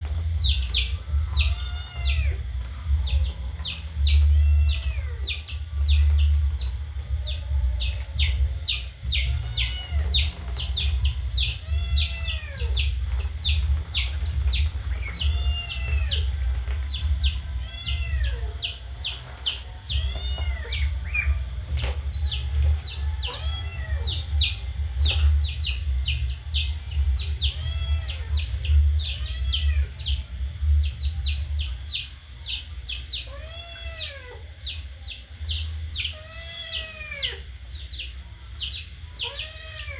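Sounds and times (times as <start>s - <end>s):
duckling peeping: 0.0s - 39.9s
low rumble: 20.8s - 32.0s.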